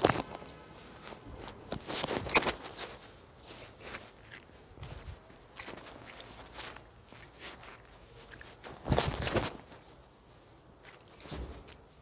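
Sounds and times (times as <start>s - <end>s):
footsteps splashing in puddle: 3.2s - 9.8s.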